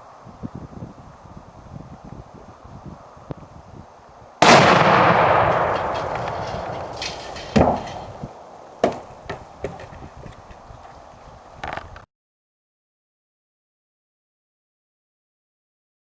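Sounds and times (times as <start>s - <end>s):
exploding target blast: 4.4s - 8.0s
rifle shot: 4.4s - 8.0s
sharp bangs: 4.4s - 9.8s.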